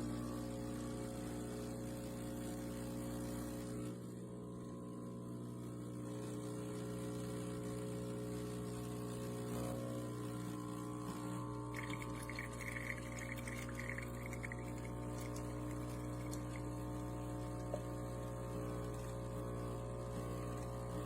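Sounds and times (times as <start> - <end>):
espresso machine pump humming: 7.9 - 21.0.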